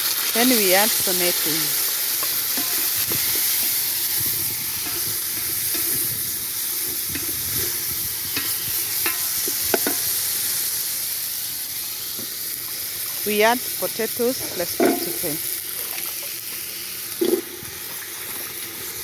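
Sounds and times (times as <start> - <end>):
onions sizzling in hot oil: 0.0 - 19.0
utensil stirring and knocking pot: 2.2 - 3.8, 7.1 - 10.0, 14.5 - 15.3.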